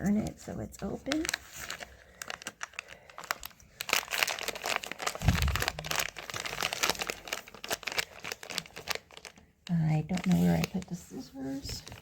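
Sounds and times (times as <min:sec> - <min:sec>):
packaging crinkling: 0:00.1 - 0:12.0
low thump: 0:05.2 - 0:05.8.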